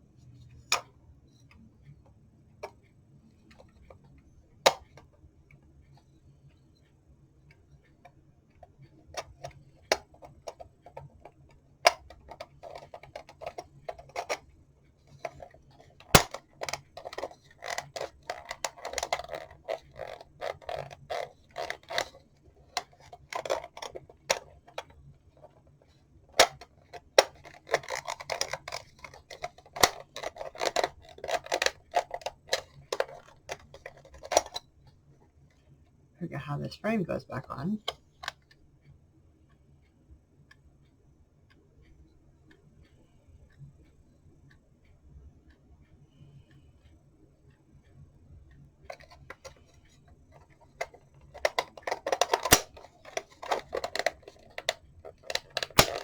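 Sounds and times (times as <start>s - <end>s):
clock parts clicking and rattling: 9.2s - 14.4s, 15.1s - 25.6s, 26.3s - 34.6s, 48.9s - 56.0s.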